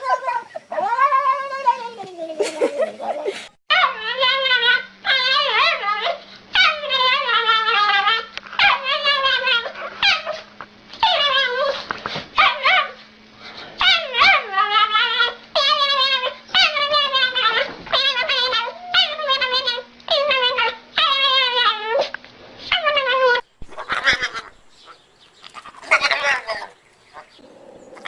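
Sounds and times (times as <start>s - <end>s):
dog whining and howling: 0.0s - 2.1s, 3.1s - 13.1s, 13.8s - 25.0s
faint steady hum: 0.0s - 28.0s.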